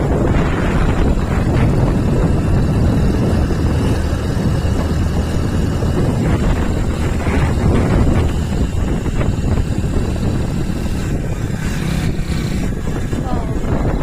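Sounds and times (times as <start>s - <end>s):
motorbike running: 0.0s - 14.0s
road noise: 0.0s - 14.0s
wind buffeting microphone: 0.0s - 14.0s.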